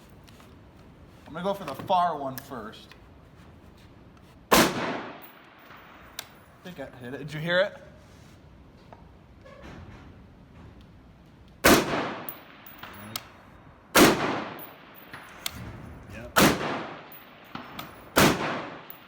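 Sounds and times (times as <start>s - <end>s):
rifle shots with echo: 4.5s - 6.0s, 11.6s - 13.0s, 13.9s - 19.0s.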